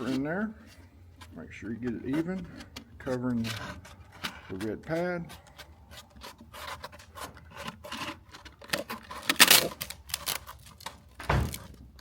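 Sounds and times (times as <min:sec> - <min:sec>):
sandpaper rustling and scraping: 0:03.1 - 0:08.2
dull thump: 0:11.2 - 0:11.8.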